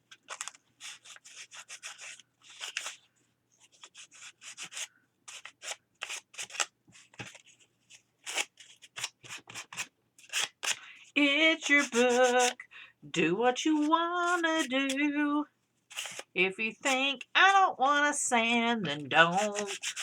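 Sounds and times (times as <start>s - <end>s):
sandpaper rubbing on paper: 11.7s - 12.6s, 19.3s - 20.0s.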